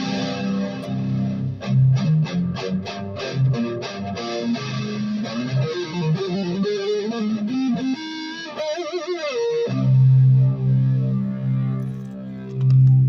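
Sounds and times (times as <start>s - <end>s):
loud low guitar chord ringing: 0.0s - 6.1s
electric guitar lead run: 0.0s - 13.0s.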